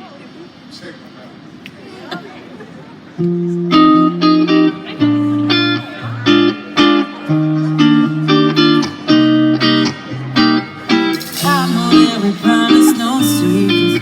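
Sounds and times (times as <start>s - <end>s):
plucked guitar chords: 3.2s - 14.0s
bass line: 7.4s - 14.0s.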